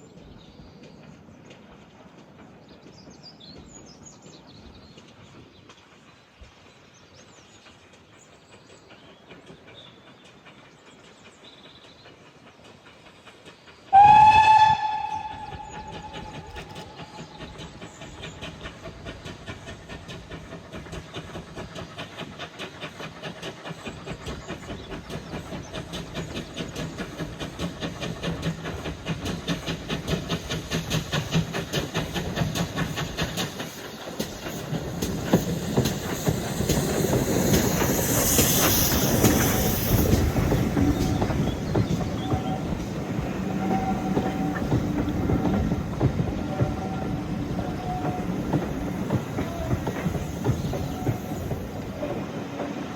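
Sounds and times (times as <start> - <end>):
steam train chugging: 0.0 - 52.9
steam locomotive whistle: 13.9 - 17.3, 40.8 - 52.9.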